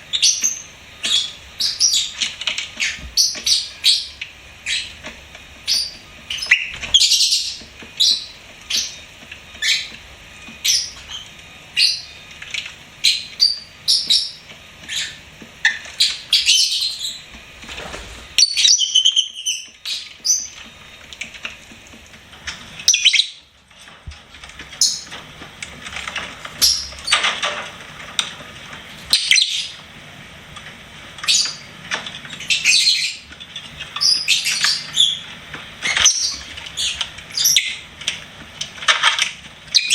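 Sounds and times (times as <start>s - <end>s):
lovebirds chirping: 0.0s - 10.0s, 10.6s - 17.3s, 18.2s - 20.7s, 22.8s - 23.5s, 31.2s - 31.7s, 32.3s - 37.9s.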